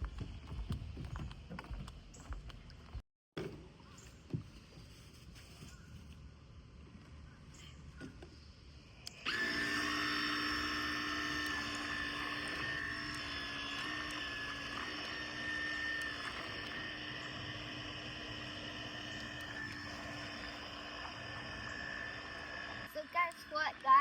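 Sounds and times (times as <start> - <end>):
toy boat electric motor whine: 9.0 - 24.0.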